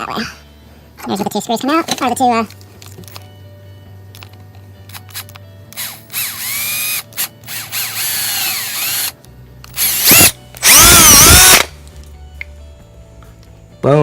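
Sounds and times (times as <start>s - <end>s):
power drill boring through plastic: 5.0s - 9.2s, 9.8s - 11.7s.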